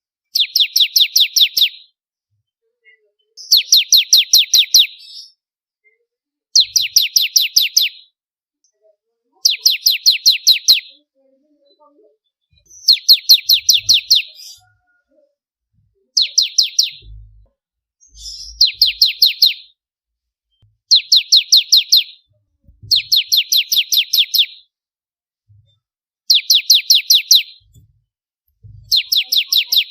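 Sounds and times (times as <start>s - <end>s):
bird singing rapid high notes: 0.3s - 1.9s, 9.4s - 10.9s, 12.6s - 14.8s, 16.2s - 17.4s, 18.0s - 19.8s, 20.9s - 22.3s, 22.9s - 24.7s, 26.3s - 27.7s, 28.9s - 29.9s.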